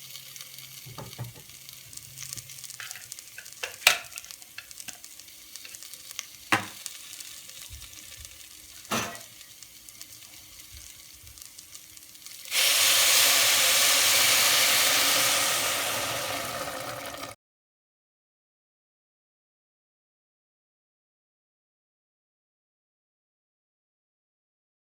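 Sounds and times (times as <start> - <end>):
food frying with soft crackle: 0.0 - 17.4
loud sizzle in hot oil: 0.0 - 17.4.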